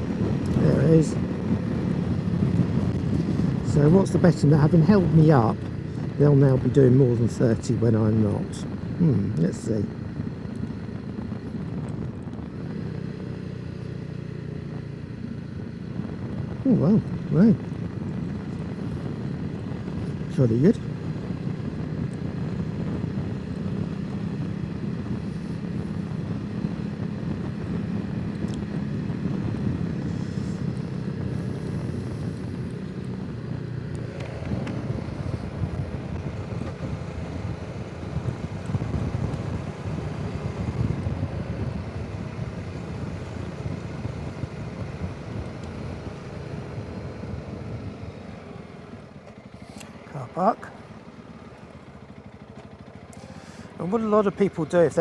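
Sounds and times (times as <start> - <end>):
wind noise on microphone: 0.0 - 3.8, 34.2 - 46.1
motorcycle engine running: 0.0 - 55.0.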